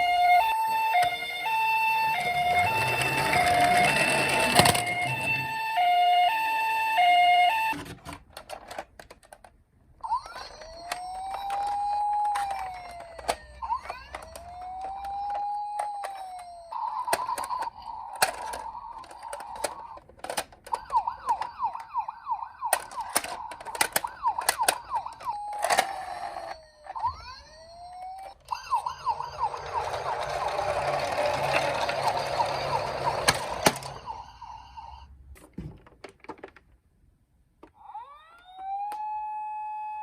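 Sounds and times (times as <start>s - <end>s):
toy electronic sirens: 0.0s - 8.0s, 10.0s - 35.1s, 37.7s - 40.0s.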